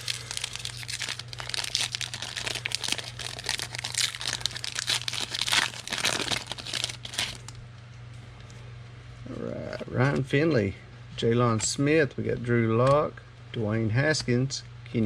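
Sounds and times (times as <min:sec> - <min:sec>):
foil wrappers tearing and crinkling: 0:00.0 - 0:07.6.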